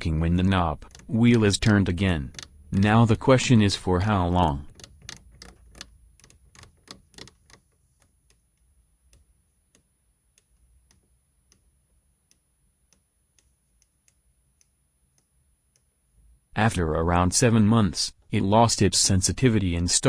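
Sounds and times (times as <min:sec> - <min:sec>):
control wheel detent clicks: 0:00.7 - 0:11.7.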